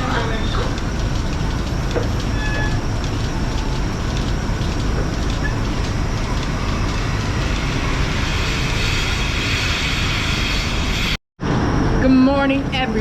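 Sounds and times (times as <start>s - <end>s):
faint regular ticking: 0.0s - 8.5s
milking equipment running: 0.0s - 10.8s.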